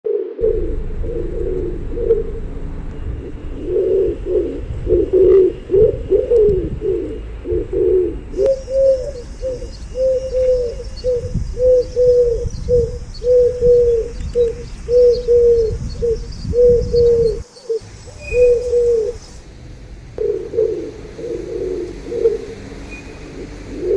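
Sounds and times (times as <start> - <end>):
pigeons cooing: 0.1 - 19.4, 20.2 - 23.9
low rumble: 0.4 - 23.9.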